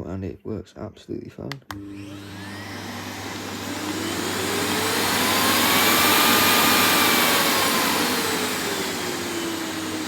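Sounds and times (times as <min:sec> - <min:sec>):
vacuum cleaner motor whine: 0:01.7 - 0:10.0.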